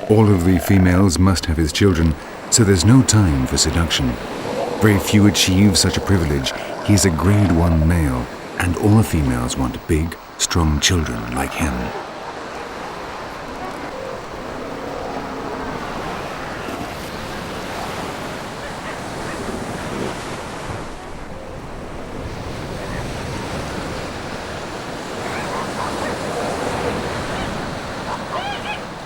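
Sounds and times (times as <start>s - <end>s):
wind on microphone: 0.0s - 10.4s
faint short calls: 0.0s - 15.9s
surf washing onto beach: 0.0s - 29.0s.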